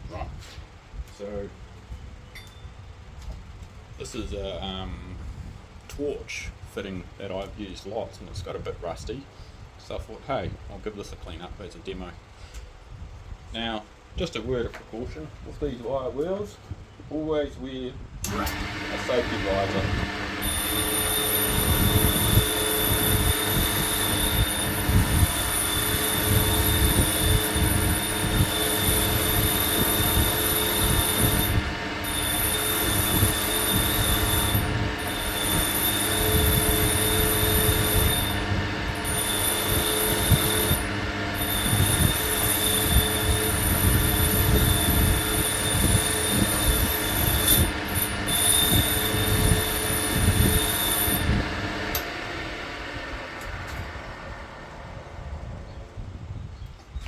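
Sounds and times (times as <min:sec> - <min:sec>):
wire wheel grinding metal: 0:18.3 - 0:56.1.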